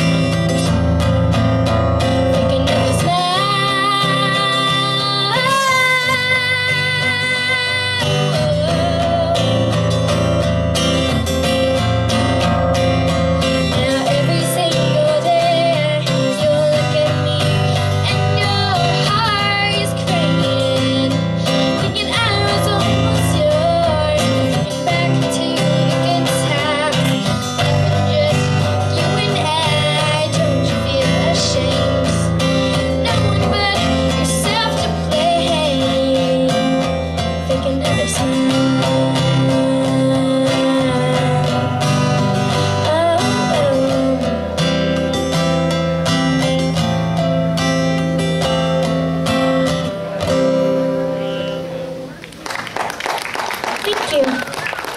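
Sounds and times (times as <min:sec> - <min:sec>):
strummed acoustic guitar: 0:00.0 - 0:52.2
woman singing: 0:02.0 - 0:10.4, 0:13.4 - 0:45.1.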